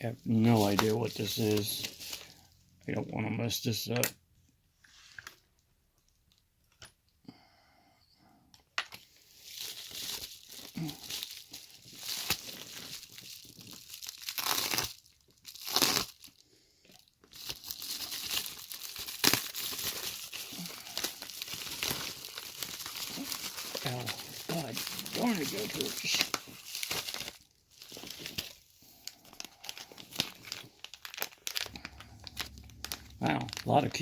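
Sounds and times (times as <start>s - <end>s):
package wrapping tearing and crinkling: 0.4s - 2.4s, 9.1s - 34.0s.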